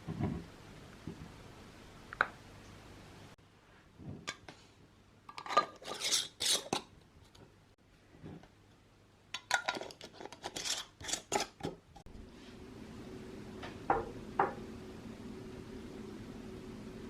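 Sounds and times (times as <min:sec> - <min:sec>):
utensils clinking on dishes: 0:05.3 - 0:06.9, 0:09.4 - 0:11.8
steady low hum: 0:12.1 - 0:17.0.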